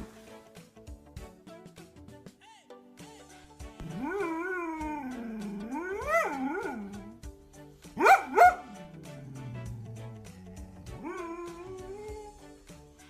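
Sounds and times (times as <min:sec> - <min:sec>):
background music with beat: 0:00.0 - 0:13.0
dog howling: 0:03.9 - 0:07.1, 0:08.0 - 0:12.4
dog barking: 0:08.0 - 0:08.9.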